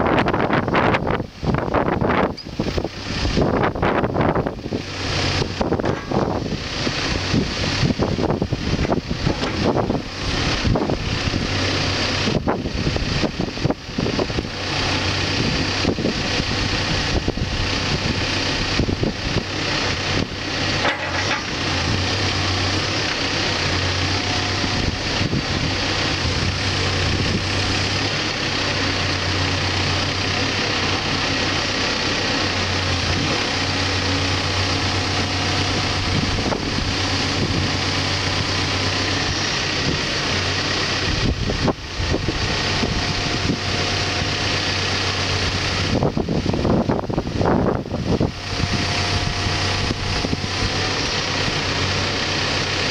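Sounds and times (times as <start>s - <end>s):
backhoe diesel engine running: 0.0s - 52.9s
short knocks and clanks: 20.8s - 21.6s.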